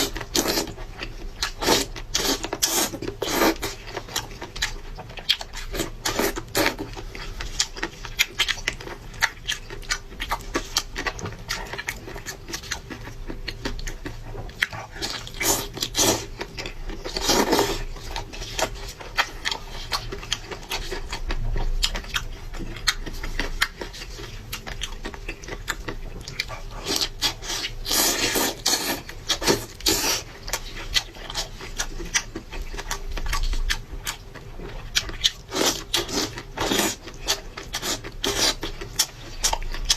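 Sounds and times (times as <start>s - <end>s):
person chewing and smacking: 0.0s - 39.9s.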